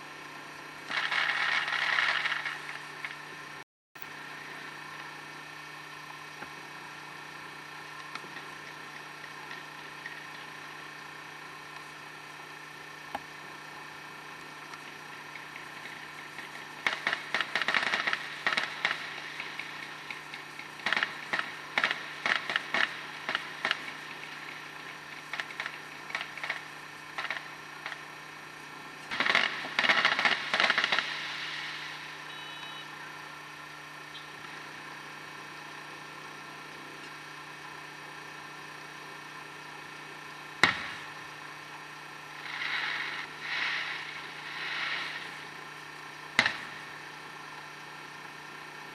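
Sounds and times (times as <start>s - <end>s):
fireworks crackling: 0.0s - 3.6s, 4.7s - 36.0s, 40.2s - 48.8s
sharp firework crack: 0.9s - 3.0s, 15.6s - 32.4s, 40.6s - 41.5s, 42.2s - 47.6s.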